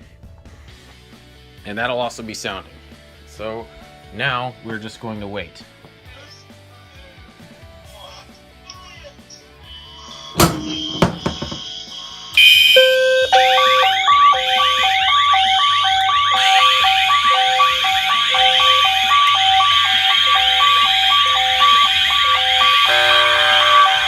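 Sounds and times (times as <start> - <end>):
fire alarm horns and sounders: 10.4 - 11.6, 12.4 - 24.0.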